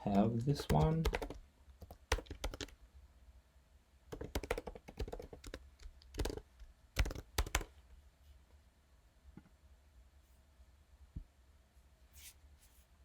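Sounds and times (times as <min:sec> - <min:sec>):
typing on computer keyboard: 0:00.6 - 0:02.8, 0:04.1 - 0:07.7.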